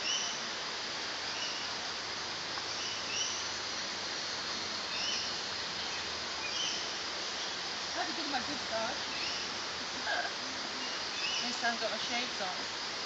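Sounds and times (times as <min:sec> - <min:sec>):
rainforest rushing hiss: 0:00.0 - 0:13.0
bird chirping: 0:10.6 - 0:11.8.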